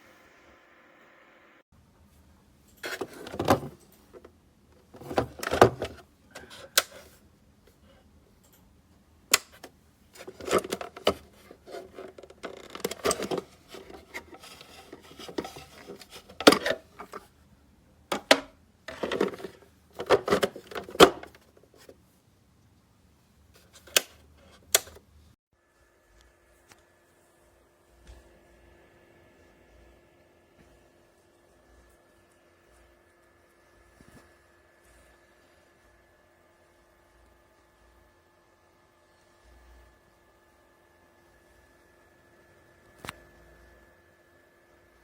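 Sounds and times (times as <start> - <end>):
clicks and knocks of handling: 9.3 - 17.3, 18.1 - 22.0
rustling and scraping: 10.2 - 17.3, 18.9 - 22.0.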